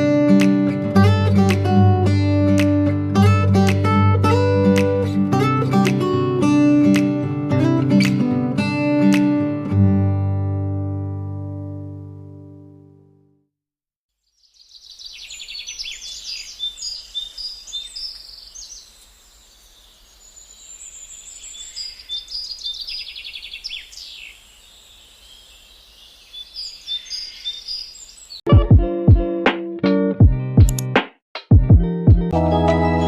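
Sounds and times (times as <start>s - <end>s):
birds chirping and trilling: 14.2s - 28.4s.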